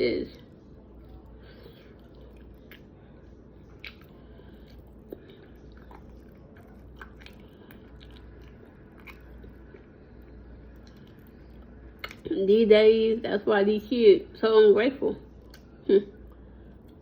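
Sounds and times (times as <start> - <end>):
low hum: 0.0 - 17.0
person chewing food: 0.3 - 12.3, 15.3 - 17.0
wet mouth clicks: 3.7 - 9.6, 12.0 - 12.3.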